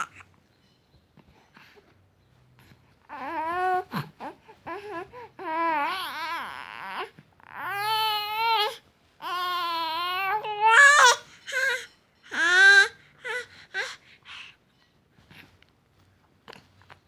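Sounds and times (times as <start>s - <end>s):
infant crying: 0.0s - 0.2s, 3.1s - 14.0s.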